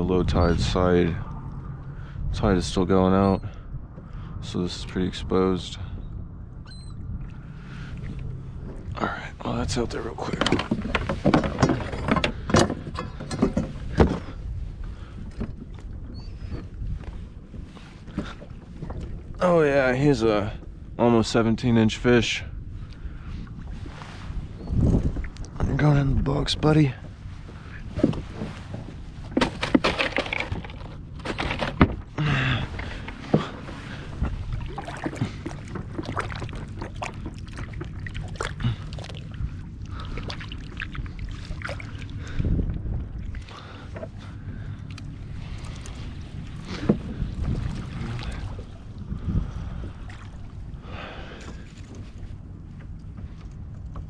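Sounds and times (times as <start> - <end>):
wind: 0.0 - 54.0
water sloshing and splashing: 6.8 - 20.9, 22.7 - 54.0
knocks and clicks of handling: 10.2 - 14.3, 29.3 - 32.1
knocks and thumps on a kayak: 10.2 - 14.4, 27.9 - 38.0, 46.6 - 47.8
water washing: 29.3 - 49.2.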